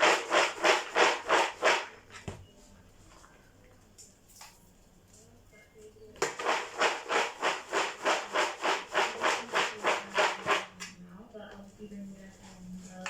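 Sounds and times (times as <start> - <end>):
spoon scraping peanuts in a pan: 0.0 - 2.0, 6.2 - 10.7.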